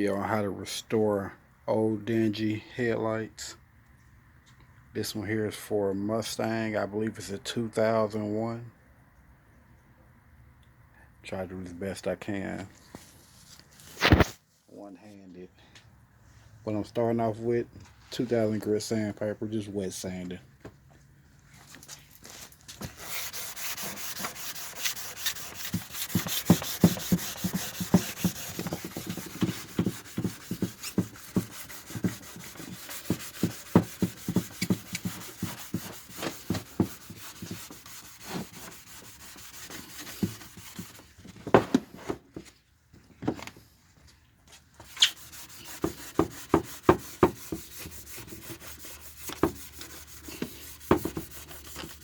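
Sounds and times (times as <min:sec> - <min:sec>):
sandpaper wet sanding plastic: 0:22.8 - 0:41.0, 0:44.8 - 0:52.0.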